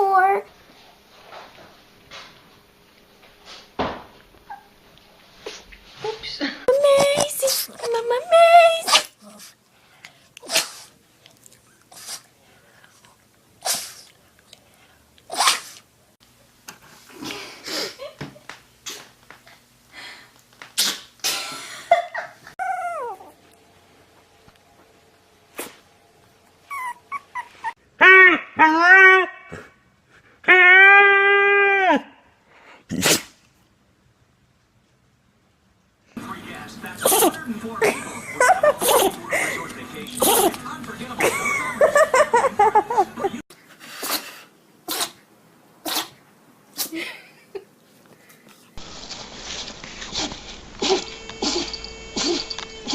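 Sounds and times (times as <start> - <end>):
puppy whimpering and yipping: 4.5 - 4.7, 22.6 - 23.4, 26.6 - 27.8
puppy sneezing: 8.8 - 9.6, 10.4 - 11.0, 11.9 - 12.3, 13.6 - 14.1, 15.3 - 15.9, 20.7 - 21.6, 32.9 - 33.4, 37.0 - 37.4, 38.7 - 39.2, 40.2 - 40.6, 43.9 - 47.0, 50.2 - 52.9.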